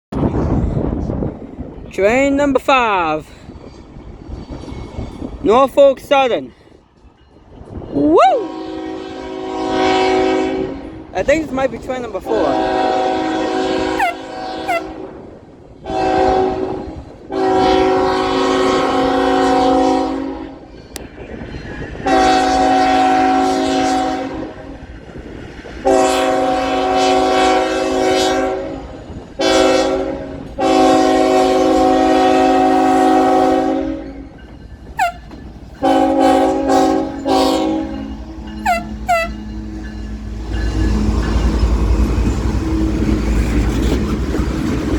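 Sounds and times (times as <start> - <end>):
train rumble: 0.1 - 44.9
locomotive air horn: 8.4 - 11.0, 12.4 - 15.0, 15.9 - 20.6, 22.0 - 24.8, 25.8 - 34.1, 35.0 - 39.4.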